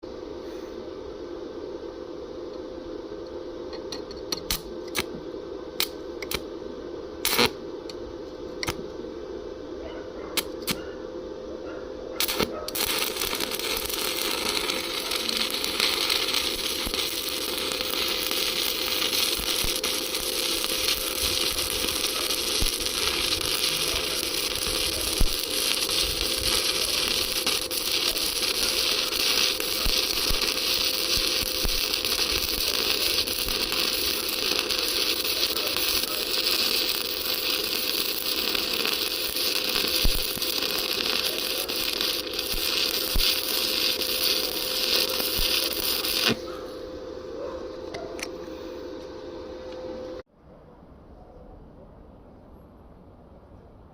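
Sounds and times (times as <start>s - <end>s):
steady hum: 0.0s - 51.0s
welding arc crackling: 4.4s - 5.1s, 5.8s - 6.5s, 7.2s - 7.6s, 10.4s - 10.8s, 12.2s - 46.5s.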